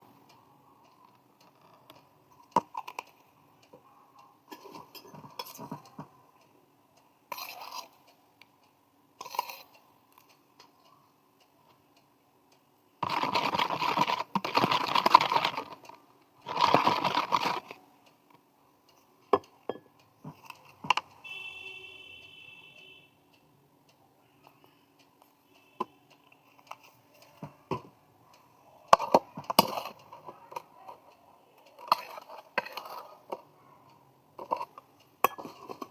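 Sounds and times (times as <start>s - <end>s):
utensils and containers clinking: 13.0s - 17.8s, 34.4s - 35.9s.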